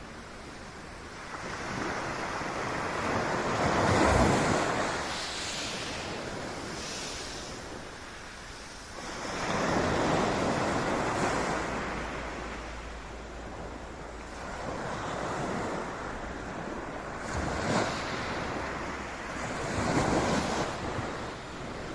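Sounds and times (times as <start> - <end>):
sea waves breaking on shore: 0.0 - 21.9
wind buffeting microphone: 9.0 - 21.9.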